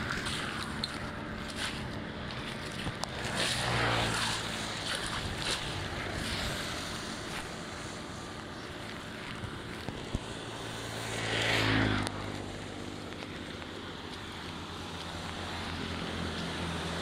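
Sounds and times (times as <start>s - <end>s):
floodwater rushing: 0.0s - 8.8s.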